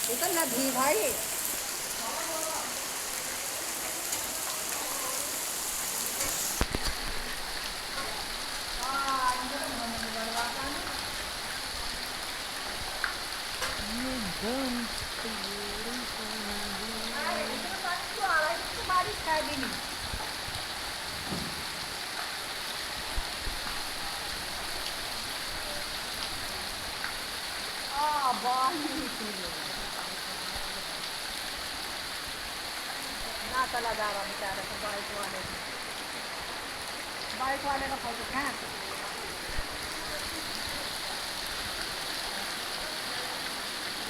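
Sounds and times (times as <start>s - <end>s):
floodwater rushing: 0.0s - 44.0s.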